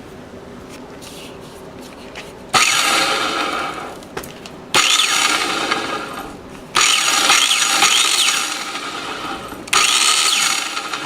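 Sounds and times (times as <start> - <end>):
power tool motor whining: 2.6 - 4.1, 4.8 - 11.0.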